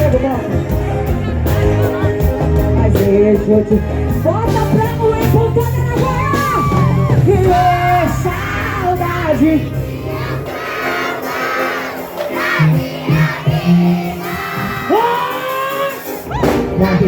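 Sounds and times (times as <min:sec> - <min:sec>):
live band music: 0:00.0 - 0:17.0
crowd singing along: 0:05.9 - 0:17.0.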